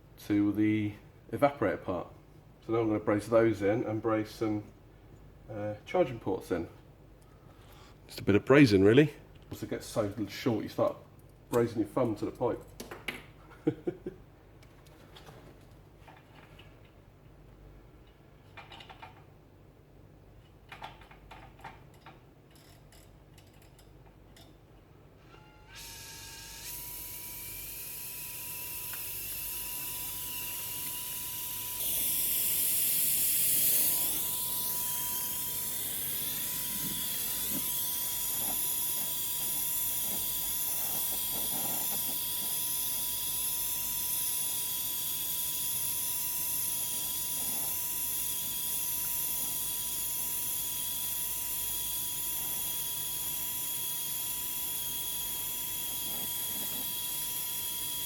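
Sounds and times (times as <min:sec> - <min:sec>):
blowtorch flame hissing: 0:31.9 - 0:43.2.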